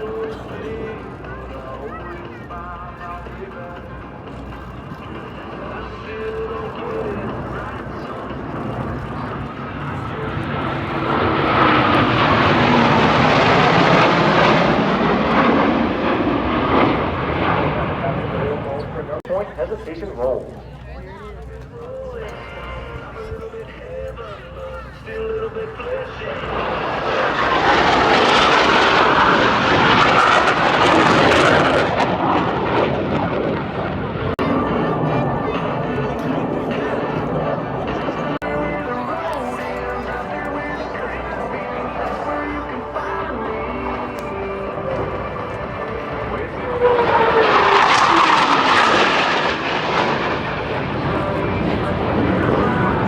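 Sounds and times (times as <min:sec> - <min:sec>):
jets flying past: 0:04.2 - 0:19.3, 0:25.8 - 0:53.0.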